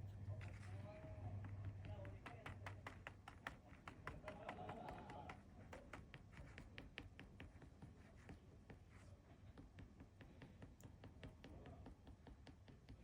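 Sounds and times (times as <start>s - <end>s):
faint light tapping by hand: 1.2s - 13.0s.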